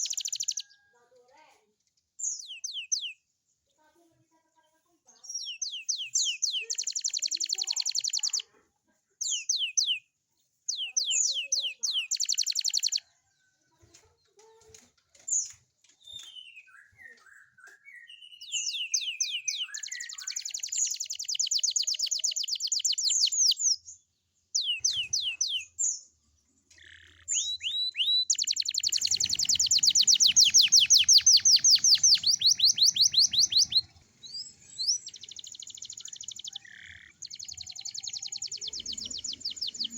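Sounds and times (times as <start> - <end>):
canary singing high trills: 0.0 - 0.8, 5.4 - 8.5, 10.7 - 13.0, 16.1 - 23.8, 24.6 - 26.0, 26.7 - 39.9.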